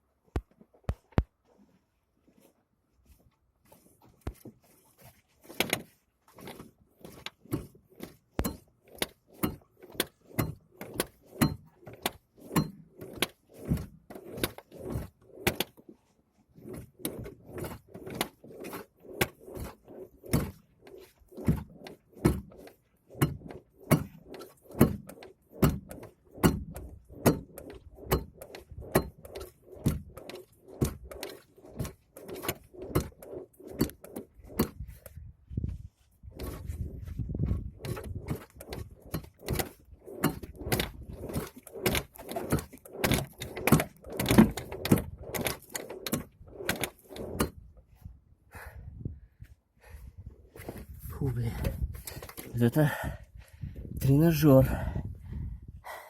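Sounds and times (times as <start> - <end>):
steering rack clunking: 5.4 - 15.9, 16.6 - 35.1, 37.5 - 47.7.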